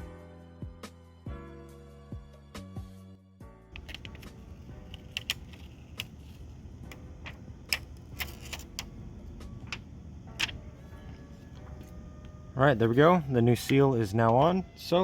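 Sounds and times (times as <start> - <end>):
low steady background hum: 3.7 - 15.0
light clicks and taps: 3.8 - 12.4.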